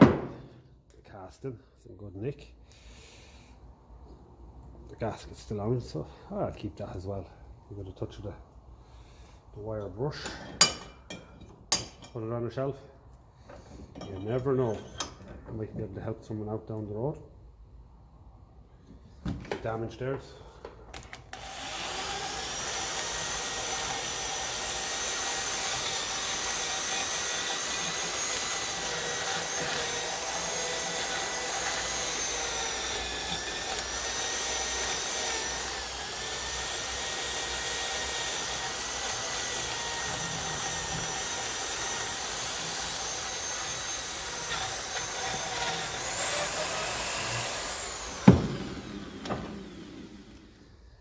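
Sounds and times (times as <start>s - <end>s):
motorised wire brush whining: 21.4s - 50.6s.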